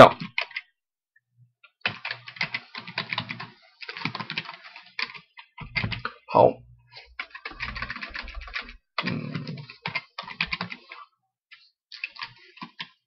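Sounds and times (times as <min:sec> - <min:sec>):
typing on keyboard: 0:00.0 - 0:00.6, 0:01.8 - 0:06.2, 0:07.2 - 0:11.0, 0:11.9 - 0:13.0.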